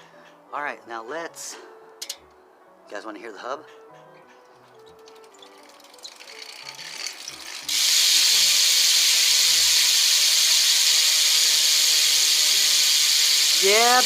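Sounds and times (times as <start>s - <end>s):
bicycle hub ratcheting buzz: 4.7s - 14.0s.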